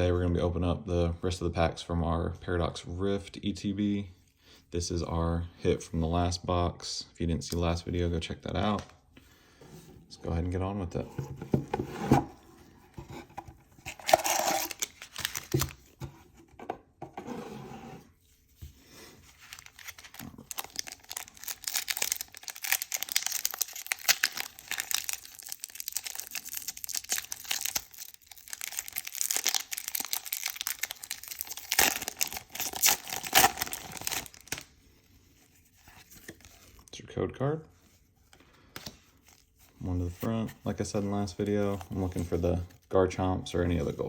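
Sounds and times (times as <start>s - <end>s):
knocks and rustles of handling: 9.6s - 17.4s
foil wrapper tearing and crinkling: 14.0s - 15.8s, 19.4s - 34.7s.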